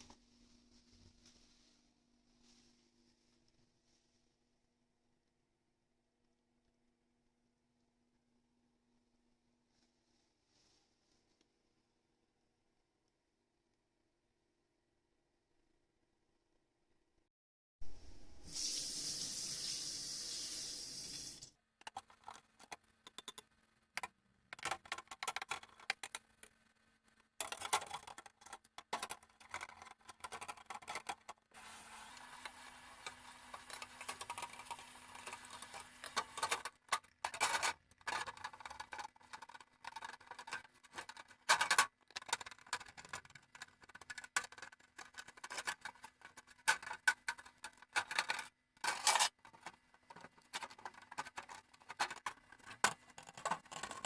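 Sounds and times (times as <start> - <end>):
tap water running: 18.4 - 21.5, 31.5 - 36.5
clicks and knocks of parts handled: 21.8 - 31.5, 33.5 - 54.0.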